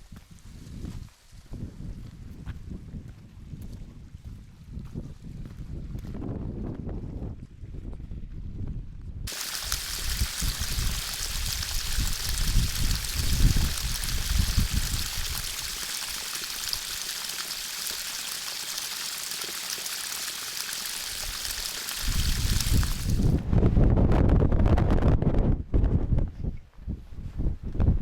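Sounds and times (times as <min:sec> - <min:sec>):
wind buffeting microphone: 0:00.2 - 0:15.8, 0:22.0 - 0:28.0
high rushing hiss: 0:09.3 - 0:23.4.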